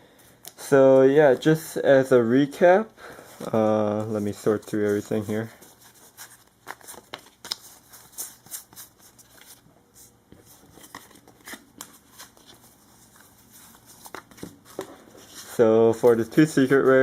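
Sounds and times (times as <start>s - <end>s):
cards clicking and rustling: 3.4s - 9.6s, 10.4s - 16.9s.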